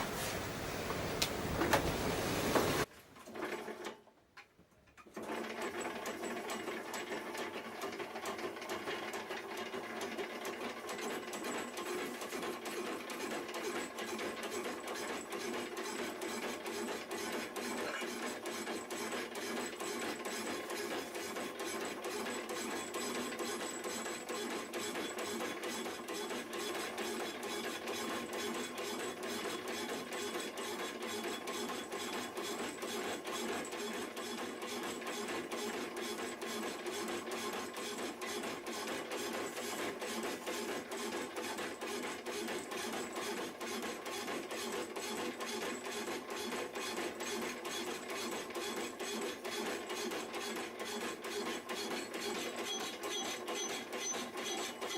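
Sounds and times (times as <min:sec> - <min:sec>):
power hacksaw rasping strokes: 0:11.4 - 0:54.9.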